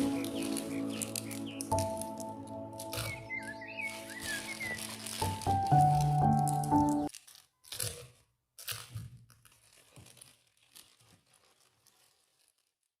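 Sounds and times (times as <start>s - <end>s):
background music: 0.0s - 7.1s
short crackling crunching noises: 0.0s - 13.0s.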